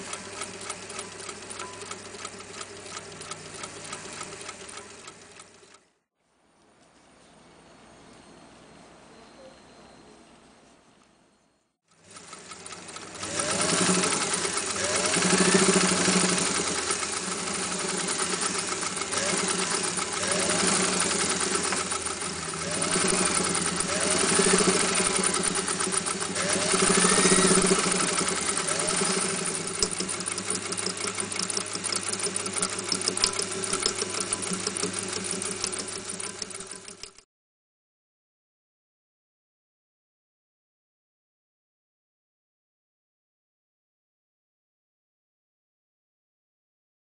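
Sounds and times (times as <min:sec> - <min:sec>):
sewing machine clattering: 0:00.0 - 0:05.8, 0:12.0 - 0:37.3.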